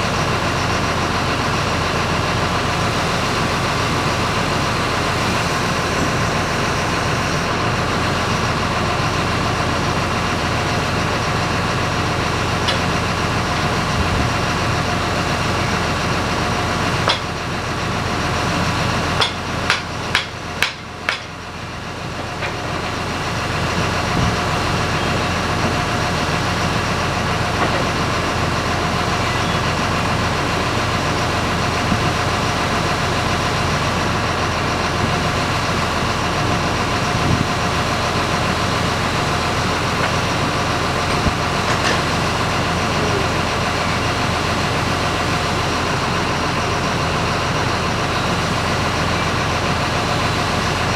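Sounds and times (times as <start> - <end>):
engine running: 0.0 - 50.9.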